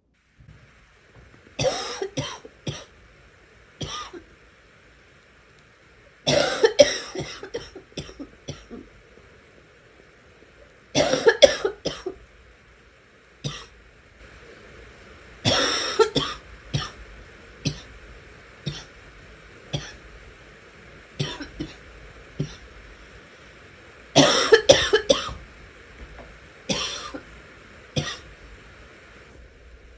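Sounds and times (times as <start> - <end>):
person coughing: 1.6 - 2.9, 6.3 - 8.8, 11.0 - 12.2, 15.5 - 17.0, 19.8 - 20.0, 21.2 - 21.8, 22.4 - 22.6, 24.2 - 25.4, 26.7 - 27.3, 28.0 - 28.3.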